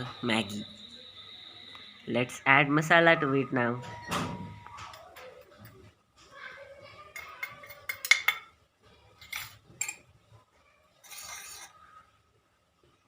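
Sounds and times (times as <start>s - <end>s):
spoon scraping a cooking pot: 11.0s - 12.0s.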